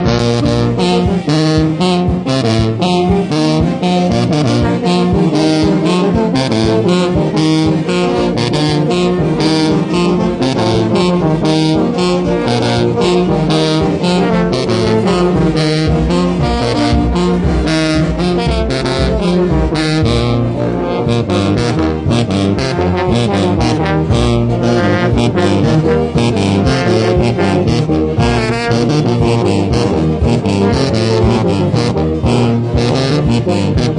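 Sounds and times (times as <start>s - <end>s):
brass instruments: 0.0s - 33.9s
sousaphone bass line: 0.0s - 33.9s
steady percussive beat: 0.0s - 33.9s.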